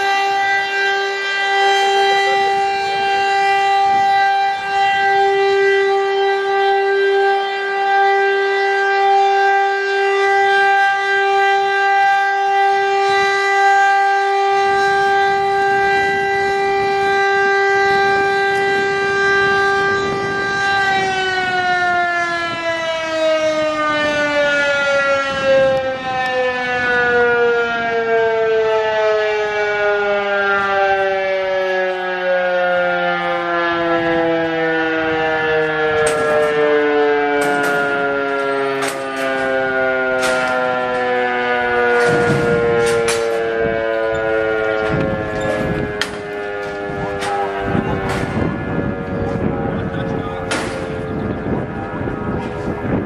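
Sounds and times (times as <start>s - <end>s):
rotary siren tone: 0.0s - 53.0s.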